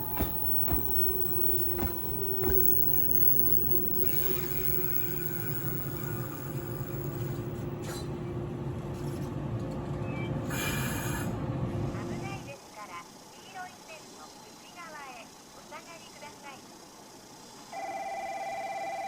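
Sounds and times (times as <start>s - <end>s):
train wheels rumbling on rails: 0.0s - 10.6s.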